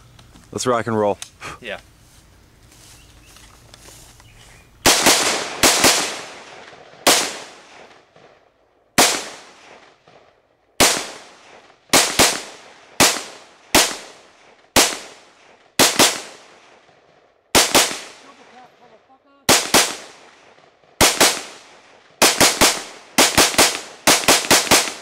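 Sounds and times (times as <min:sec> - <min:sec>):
rifle shots: 0:04.8 - 0:08.4, 0:09.0 - 0:18.8, 0:19.5 - 0:25.0.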